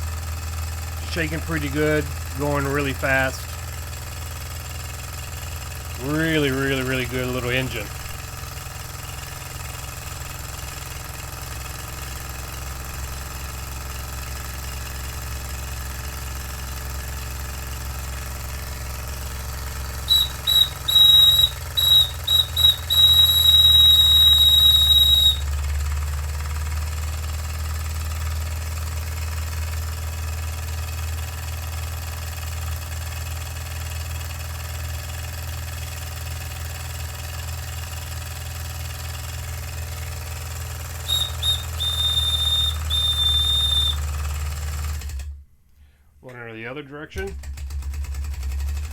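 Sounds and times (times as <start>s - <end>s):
toy steam engine running: 1.0s - 4.0s, 18.5s - 27.9s, 36.7s - 45.2s
steam whistle tooting: 20.0s - 25.8s, 41.0s - 44.3s.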